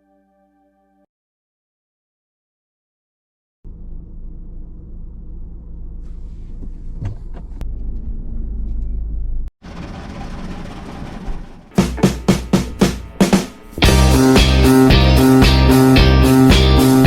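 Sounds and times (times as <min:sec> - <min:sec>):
car rumbling on road: 0:03.7 - 0:15.6
music with sharp drum hits: 0:11.8 - 0:17.0.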